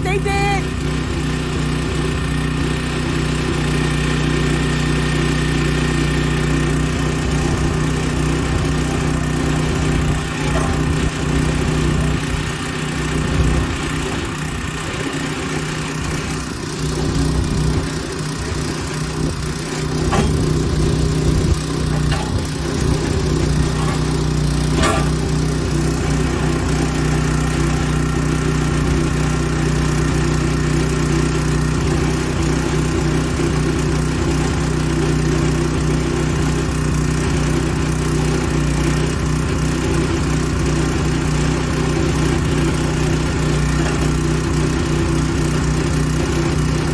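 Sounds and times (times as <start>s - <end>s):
backhoe engine idling: 0.0s - 46.9s.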